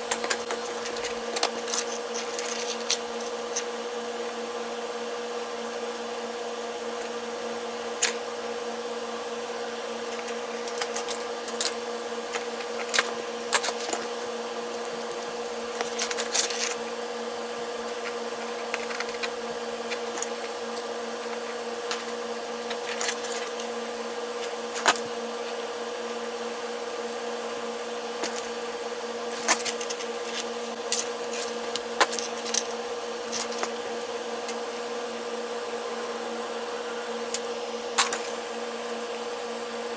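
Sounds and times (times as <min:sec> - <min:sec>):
electrical hum: 0:00.0 - 0:39.9
clicks of small parts handled: 0:00.1 - 0:03.7.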